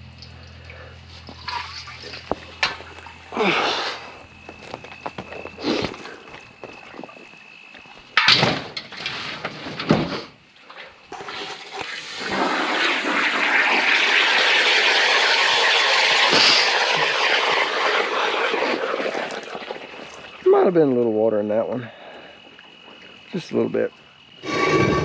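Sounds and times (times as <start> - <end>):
water pouring and splashing: 0.0 - 3.6, 10.6 - 20.4.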